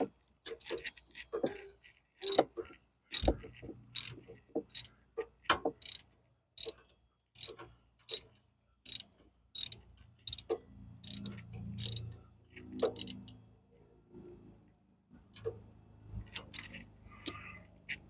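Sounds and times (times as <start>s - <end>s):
socket ratchet clicking: 0.5s - 1.0s, 2.2s - 4.9s, 5.8s - 6.8s, 7.4s - 13.4s, 16.3s - 18.0s.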